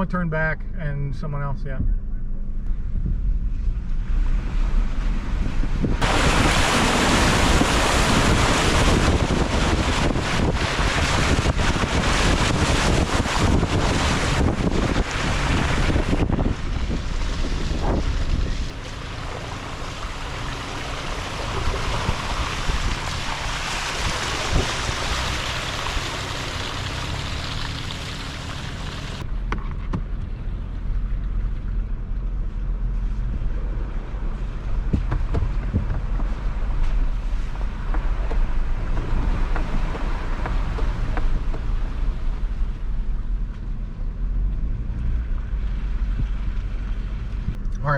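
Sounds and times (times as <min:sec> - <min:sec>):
pickup truck driving: 0:00.0 - 0:47.9
wind noise on microphone: 0:01.8 - 0:18.8, 0:21.2 - 0:26.8, 0:29.0 - 0:47.8.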